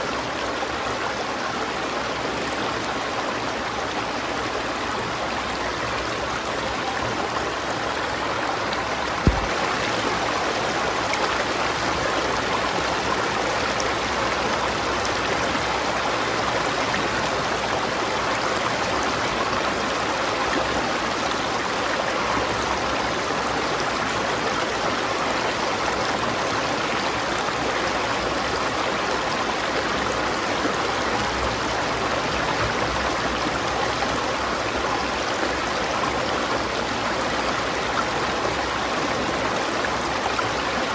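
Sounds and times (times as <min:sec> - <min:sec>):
river water rushing: 0:00.0 - 0:23.0
low thump: 0:09.2 - 0:09.9.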